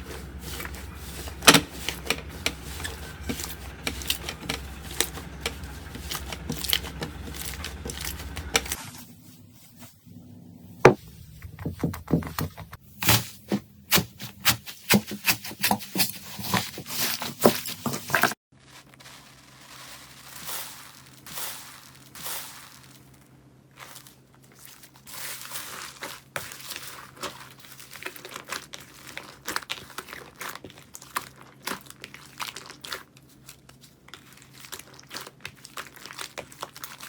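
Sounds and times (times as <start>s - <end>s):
low hum: 0.0s - 12.8s.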